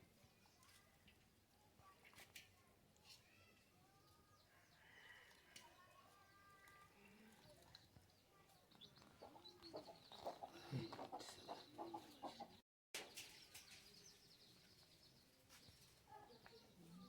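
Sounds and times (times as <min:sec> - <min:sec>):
chickens clucking faintly: 0:03.8 - 0:17.0.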